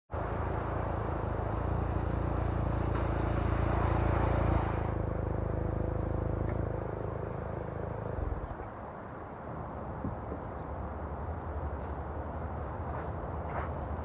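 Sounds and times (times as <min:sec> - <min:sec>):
car engine droning: 0:00.1 - 0:08.9.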